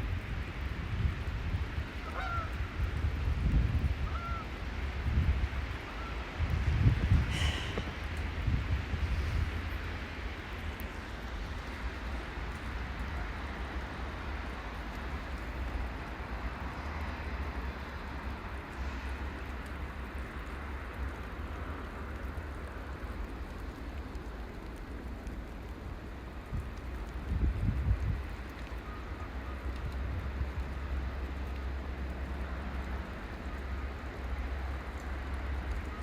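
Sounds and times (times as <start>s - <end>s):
wind rumbling on microphone: 0.0s - 36.0s
even hiss: 7.3s - 8.0s.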